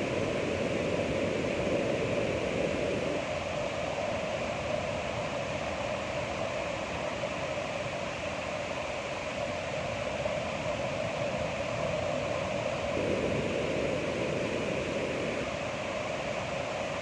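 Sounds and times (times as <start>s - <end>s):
ocean waves washing: 13.0s - 15.5s.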